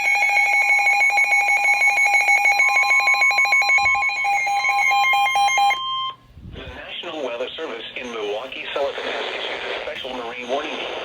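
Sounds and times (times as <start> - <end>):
pulsing electronic alarm tone: 0.0 - 6.1.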